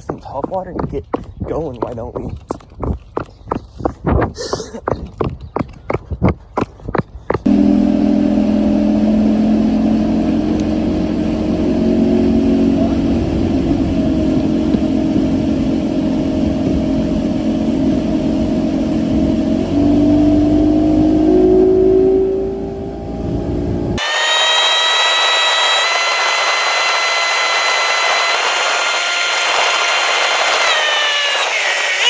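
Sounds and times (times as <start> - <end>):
outboard motor running: 7.4 - 32.0.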